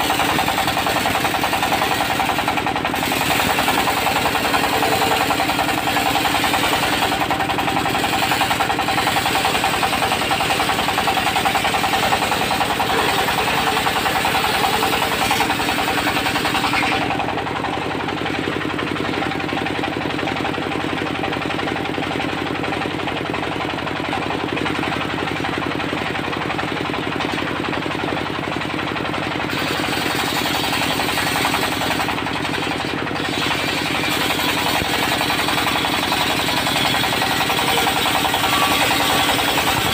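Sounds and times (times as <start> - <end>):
circular saw blade cutting wood: 0.0 - 17.3, 29.5 - 39.9
diesel engine knocking: 0.0 - 39.9.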